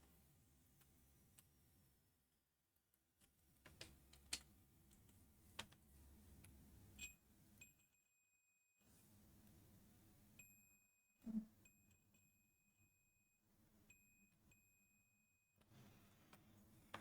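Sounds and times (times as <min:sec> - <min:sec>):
faint multimeter beeps: 0:10.4 - 0:15.6.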